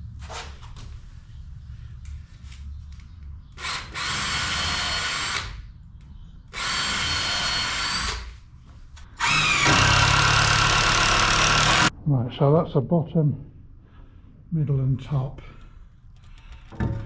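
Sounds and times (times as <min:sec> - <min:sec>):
power drill drilling into wood: 0:03.6 - 0:05.5, 0:06.6 - 0:08.2, 0:09.2 - 0:11.9.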